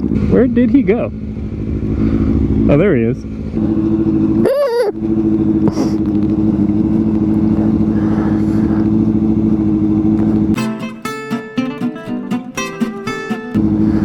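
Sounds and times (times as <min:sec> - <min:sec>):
road and wind noise: 0:00.0 - 0:10.6, 0:13.5 - 0:14.0
motorcycle engine running: 0:00.0 - 0:11.3, 0:13.0 - 0:14.0
guitar music: 0:10.5 - 0:14.0.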